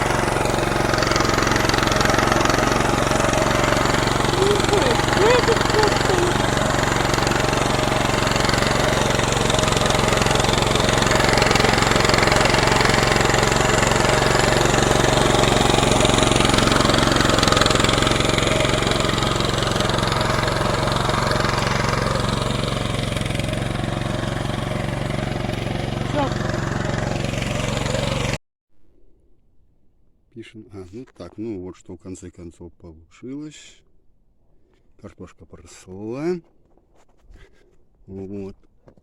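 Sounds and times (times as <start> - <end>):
walk-behind tractor engine running: 0.0 - 28.4.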